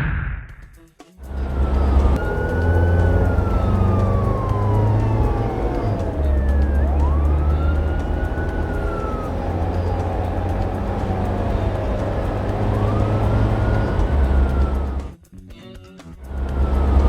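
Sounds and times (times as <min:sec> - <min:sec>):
low engine rumble: 0:01.2 - 0:15.2, 0:16.2 - 0:17.0
slow wailing siren: 0:01.2 - 0:15.2, 0:16.3 - 0:17.0.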